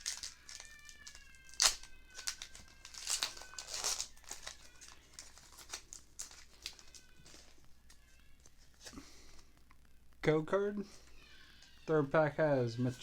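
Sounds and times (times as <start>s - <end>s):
foil wrapper crinkling and tearing: 0.0s - 8.9s.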